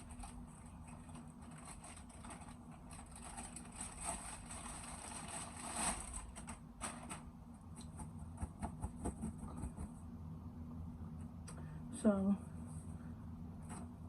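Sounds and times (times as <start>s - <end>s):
packaging rustling: 0.0s - 7.3s
steady low hum: 0.0s - 14.0s.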